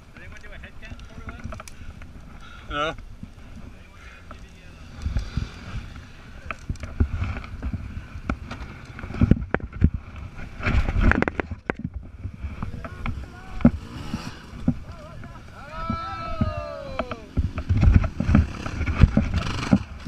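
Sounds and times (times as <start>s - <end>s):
off-road vehicle rumble: 0.0s - 20.0s
wind on microphone: 4.9s - 20.0s.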